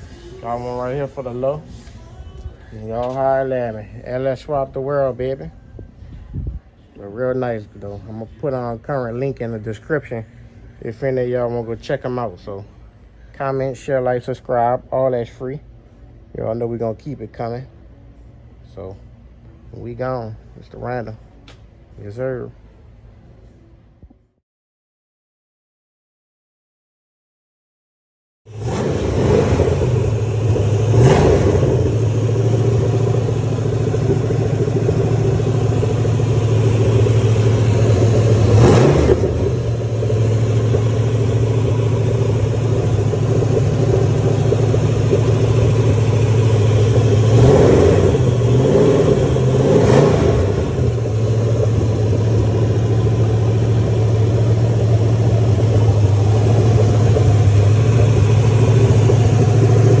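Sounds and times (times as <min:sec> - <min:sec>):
car engine idling and revving: 0:00.0 - 0:23.9, 0:28.5 - 1:00.0.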